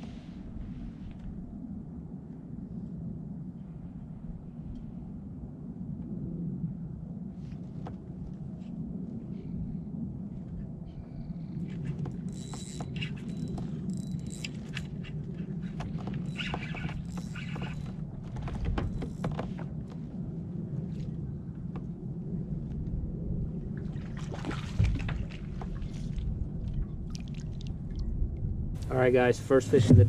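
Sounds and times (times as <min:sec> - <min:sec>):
low rumble: 0:19.9 - 0:30.0.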